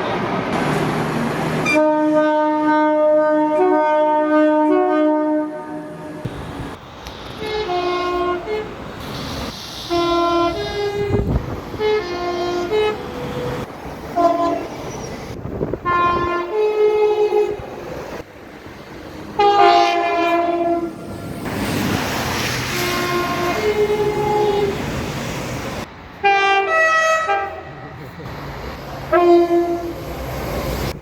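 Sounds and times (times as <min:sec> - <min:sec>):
multi-tone train horn blasts: 0:01.6 - 0:06.3, 0:07.4 - 0:08.8, 0:09.9 - 0:14.8, 0:15.8 - 0:17.7, 0:19.4 - 0:21.0, 0:22.8 - 0:24.8, 0:26.2 - 0:28.0, 0:29.1 - 0:30.1
train running noise: 0:05.9 - 0:31.0.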